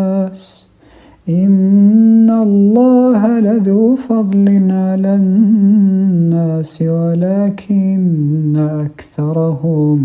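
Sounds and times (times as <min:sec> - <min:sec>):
man chanting: 0:00.0 - 0:10.0
quick breath: 0:00.7 - 0:01.2.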